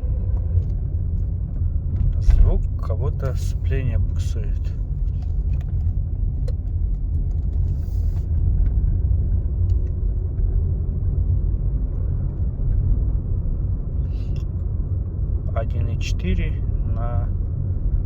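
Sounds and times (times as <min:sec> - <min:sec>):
car cabin engine rumble: 0:00.0 - 0:18.0.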